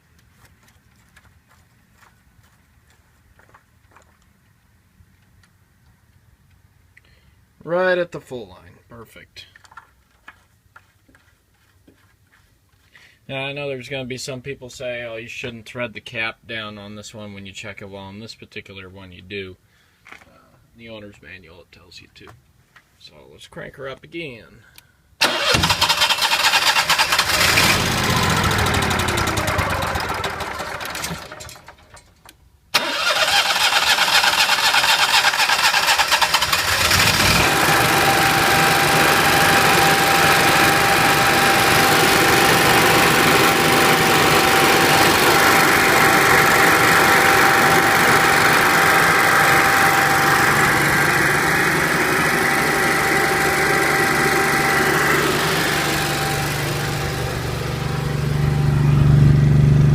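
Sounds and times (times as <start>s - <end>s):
generator engine running: 25.2s - 32.0s, 32.8s - 59.9s
generator starter cranking: 25.2s - 58.0s
steady whine: 37.4s - 59.9s.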